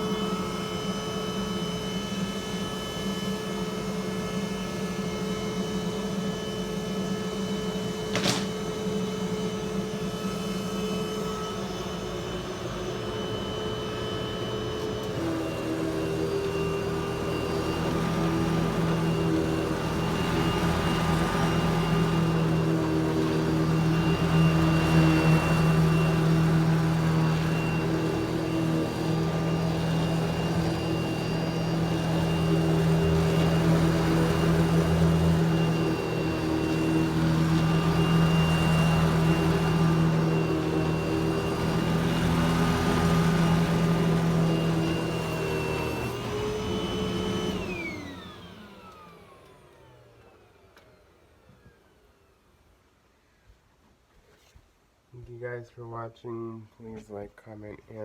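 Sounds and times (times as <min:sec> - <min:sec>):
vacuum cleaner whining: 0:00.0 - 0:55.4.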